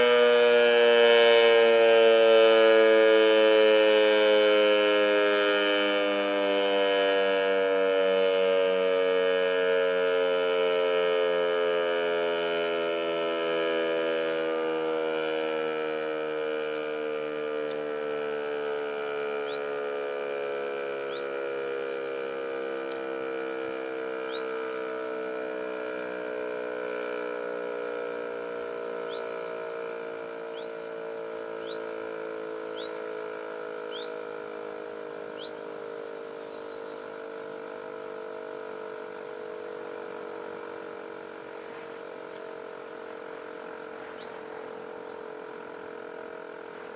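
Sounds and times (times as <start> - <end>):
siren winding down: 0.0 - 46.9
rising bird chirps: 19.4 - 19.8, 21.0 - 22.3, 24.2 - 25.3, 29.0 - 29.7, 30.5 - 30.9, 31.5 - 32.0, 32.7 - 33.1, 33.8 - 37.2, 44.1 - 45.2.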